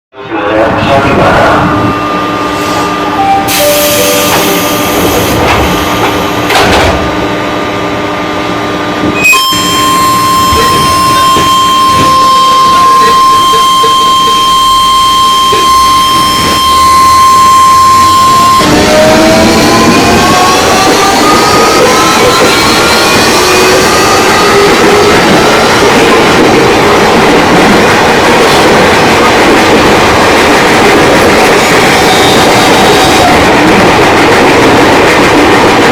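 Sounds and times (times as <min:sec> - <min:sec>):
rail noise: 0:00.2 - 0:35.9
electric train motor whine: 0:01.7 - 0:27.1.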